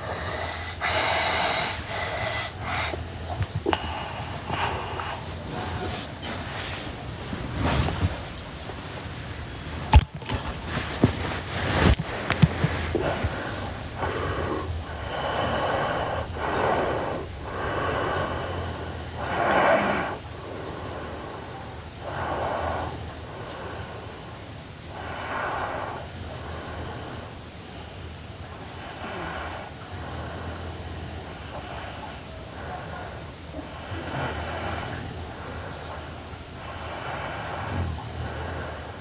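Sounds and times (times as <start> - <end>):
girl snoring: 0.0 - 8.4, 12.3 - 21.2.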